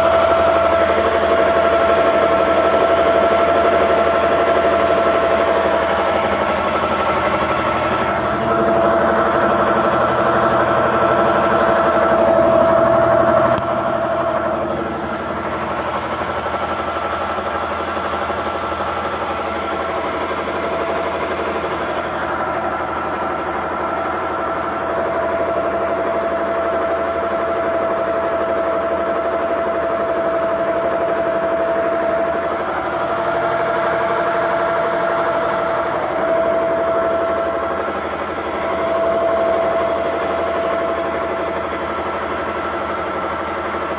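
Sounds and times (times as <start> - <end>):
high whine: 0.0 - 28.2
bulldozer diesel engine running: 0.0 - 43.9.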